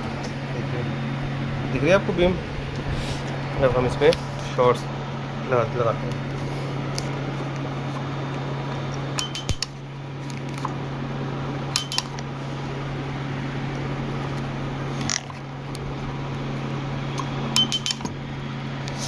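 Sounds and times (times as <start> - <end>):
machine humming: 0.0 - 19.0
laser handpiece snapping clicks: 9.2 - 9.8.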